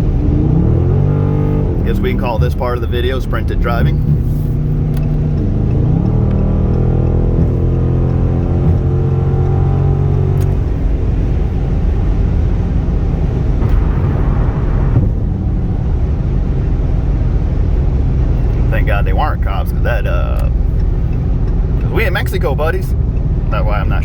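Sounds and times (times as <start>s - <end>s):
car engine accelerating hard: 0.0s - 24.0s
road and wind noise: 0.0s - 24.0s.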